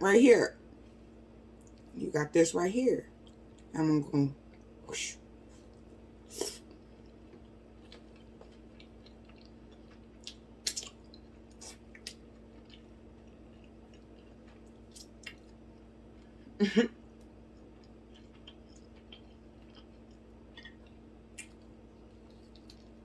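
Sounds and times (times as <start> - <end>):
wet chewing clicks and smacks: 1.6 - 1.9, 6.6 - 16.4, 17.1 - 23.0.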